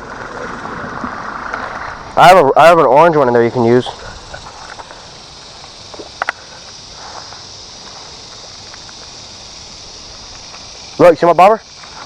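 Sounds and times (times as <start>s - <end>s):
high-pitched outdoor hiss: 0.0s - 12.0s.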